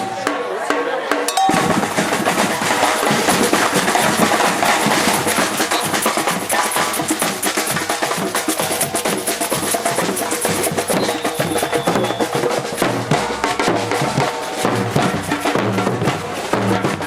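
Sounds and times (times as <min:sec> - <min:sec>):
drums beating fast rhythm: 0:00.0 - 0:17.0
low bass drum beats: 0:01.3 - 0:08.0
sharp clicking strokes: 0:03.4 - 0:12.2.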